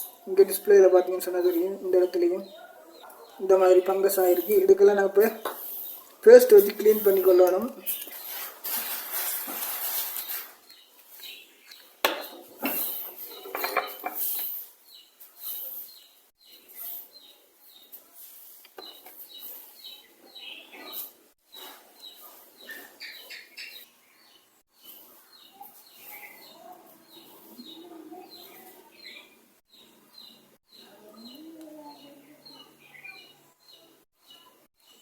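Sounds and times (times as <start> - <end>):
small birds chirping: 0.0 - 35.0.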